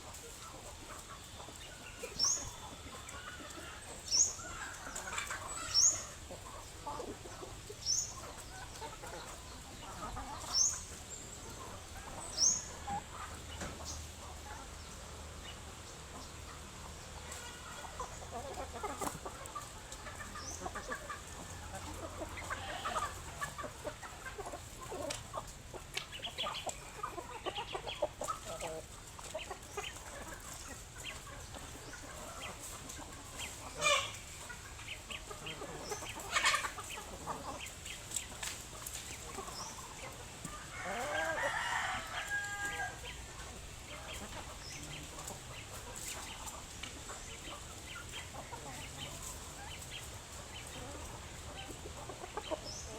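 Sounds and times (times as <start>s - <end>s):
chickens clucking: 0.0s - 52.9s
rooster crowing: 40.7s - 43.0s.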